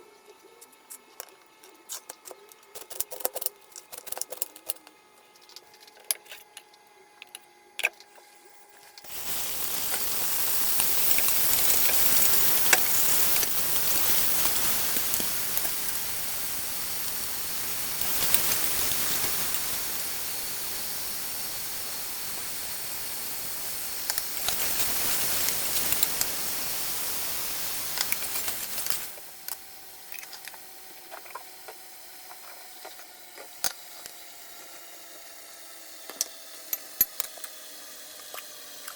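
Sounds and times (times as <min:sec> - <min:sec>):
food sizzling in hot oil: 0:09.0 - 0:32.8.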